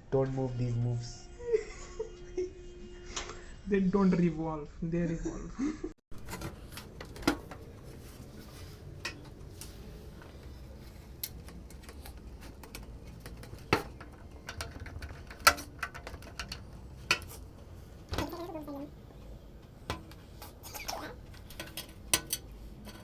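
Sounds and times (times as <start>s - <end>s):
computer parts clicking and knocking: 6.1s - 23.0s.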